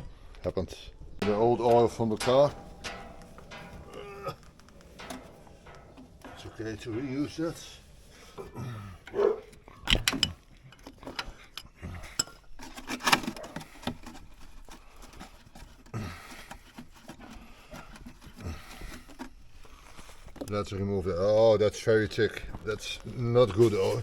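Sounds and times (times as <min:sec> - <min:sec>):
metal tools clinking and knocking: 0:01.2 - 0:19.3.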